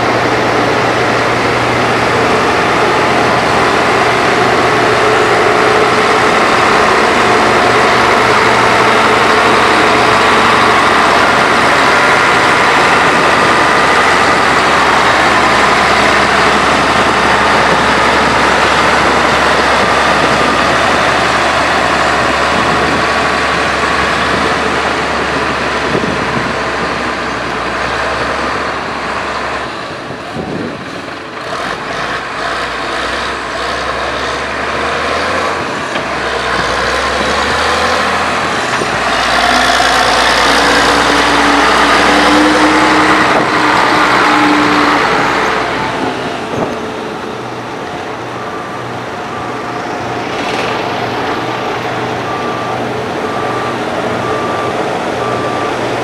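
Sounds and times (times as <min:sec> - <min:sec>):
heavy diesel machinery running: 0:00.0 - 0:56.0
reversing alarm beeping: 0:36.2 - 0:56.0.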